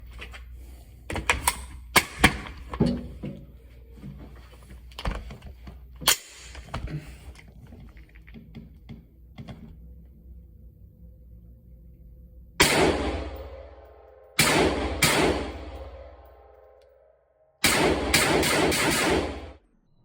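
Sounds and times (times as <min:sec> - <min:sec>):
rifle gunshots: 0:12.6 - 0:16.3, 0:17.6 - 0:19.6.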